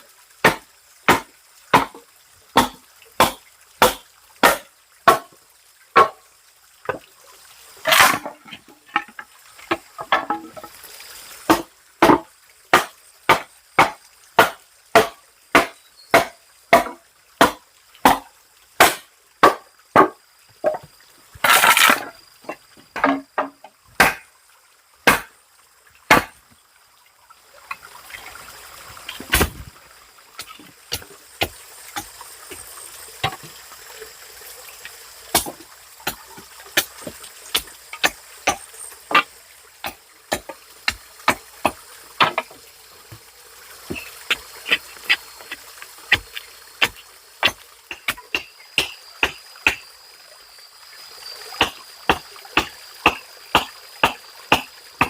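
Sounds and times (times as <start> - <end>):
water trickling: 0.0 - 55.0
hand tool chopping wet ground: 0.4 - 2.0, 2.6 - 5.3, 6.0 - 6.2, 7.8 - 10.4, 11.5 - 20.8, 21.4 - 22.1, 23.0 - 24.2, 25.0 - 25.3, 26.1 - 26.4, 29.1 - 29.7, 30.4 - 33.4, 35.3 - 43.2, 43.8 - 49.8, 51.6 - 54.7.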